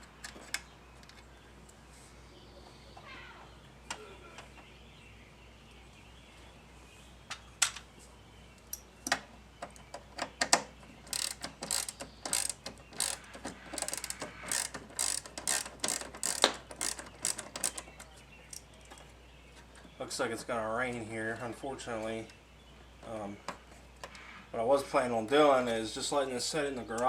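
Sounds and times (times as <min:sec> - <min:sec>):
hand ratchet clicking: 0:10.4 - 0:17.9.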